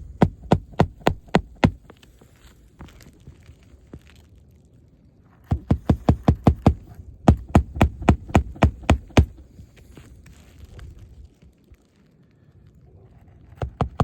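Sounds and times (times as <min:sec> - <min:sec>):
hammer driving nails: 0:00.0 - 0:01.9, 0:05.5 - 0:09.4, 0:13.6 - 0:14.0.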